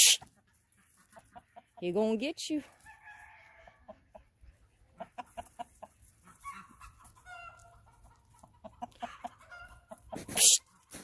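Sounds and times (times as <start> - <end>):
chickens clucking: 0.0 - 2.6, 3.2 - 11.0
short pitched chicken calls: 8.7 - 11.0.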